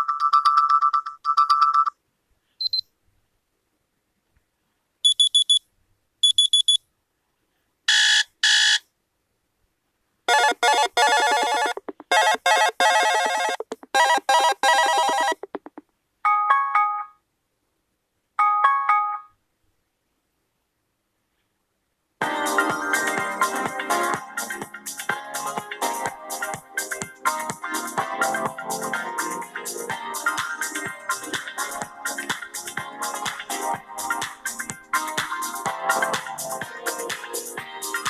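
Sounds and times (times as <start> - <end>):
phone notification tones: 10.3 - 15.6.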